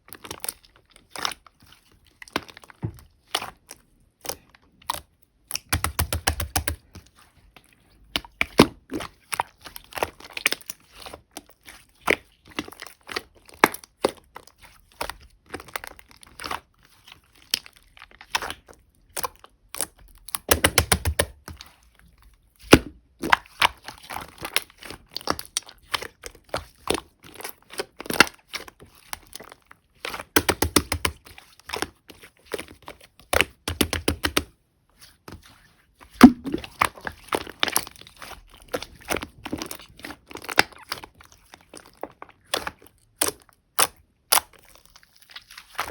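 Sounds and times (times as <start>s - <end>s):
slime sticky clicks and pops: 5.5s - 6.8s, 36.2s - 36.7s.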